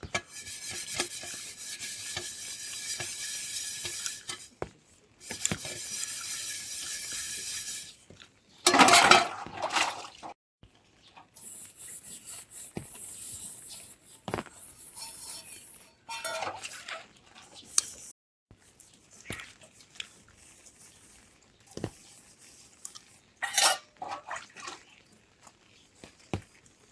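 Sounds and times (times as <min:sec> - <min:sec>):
pots and utensils clattering: 0:08.6 - 0:10.1, 0:16.1 - 0:17.1, 0:23.4 - 0:24.8.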